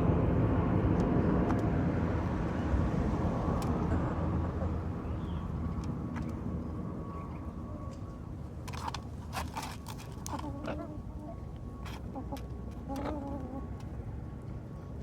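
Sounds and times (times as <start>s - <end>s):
steady low rumble: 0.0s - 15.0s
hens clucking: 9.9s - 13.9s.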